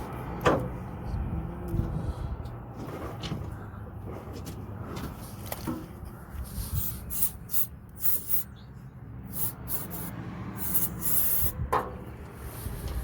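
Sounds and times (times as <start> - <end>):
aerosol can spraying: 6.8 - 8.4, 9.3 - 11.5.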